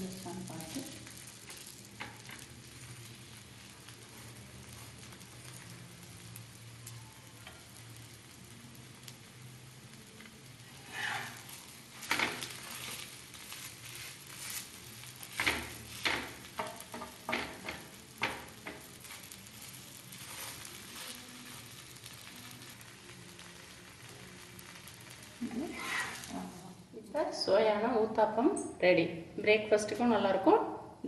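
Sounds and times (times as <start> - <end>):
food sizzling in oil: 0.0 - 28.0
spatula scraping a pan: 10.6 - 17.9, 19.0 - 22.3, 25.2 - 26.5.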